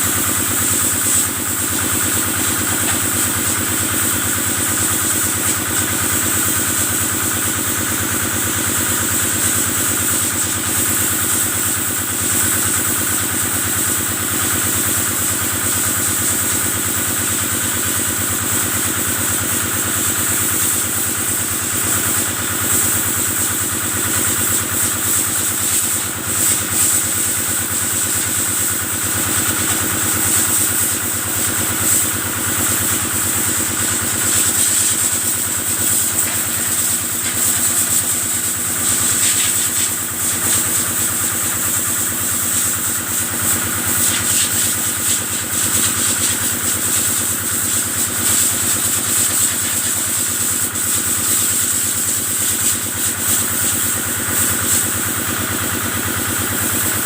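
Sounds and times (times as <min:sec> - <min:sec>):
engine driving water pump: 0:00.0 - 0:57.0
water spray hissing: 0:00.1 - 0:06.5, 0:24.2 - 0:41.8, 0:43.4 - 0:47.4.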